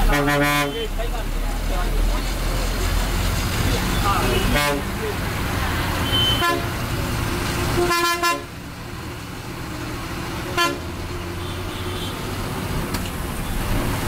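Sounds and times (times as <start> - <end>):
bus horn toots: 0.0 - 1.0, 3.8 - 5.0, 6.0 - 6.9, 7.6 - 8.6, 10.5 - 12.3
bus engine and road noise: 0.0 - 14.0.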